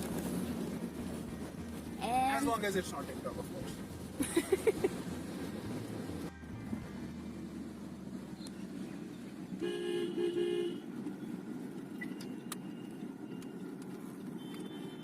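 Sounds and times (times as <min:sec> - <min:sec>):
car driving rumble: 0:00.0 - 0:15.0
car horn tooting: 0:06.3 - 0:07.2, 0:09.6 - 0:10.9, 0:14.4 - 0:15.0.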